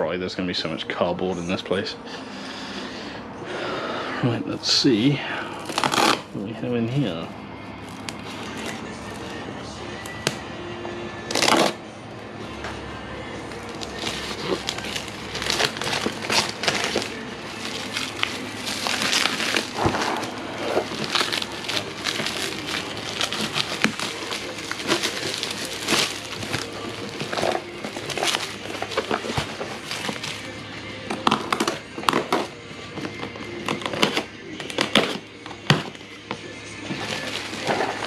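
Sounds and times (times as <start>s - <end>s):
packaging rustling and crinkling: 5.5s - 6.4s, 7.8s - 10.4s, 13.5s - 38.0s
sharp crackles: 13.7s - 30.4s.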